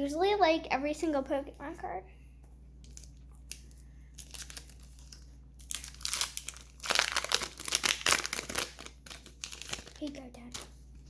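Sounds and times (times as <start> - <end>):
foil wrapper crinkling: 2.8 - 10.7.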